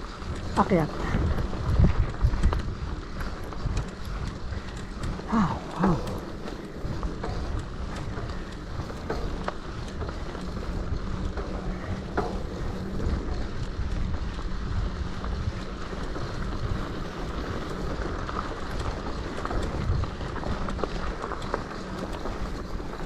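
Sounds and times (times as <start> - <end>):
bike clicks and rattles: 0.0 - 23.0
wind buffeting microphone: 0.0 - 23.0.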